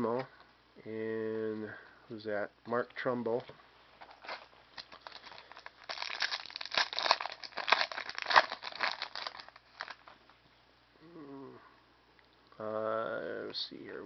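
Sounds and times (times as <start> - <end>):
plastic wrapper crinkling and tearing: 4.0 - 10.2.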